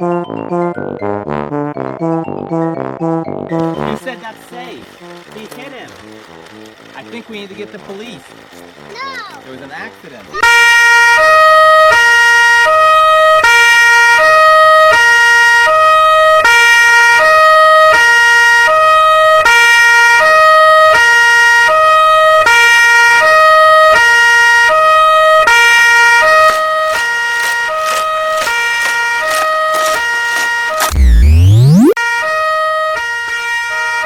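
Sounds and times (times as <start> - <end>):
two-tone siren: 10.4 - 34.0.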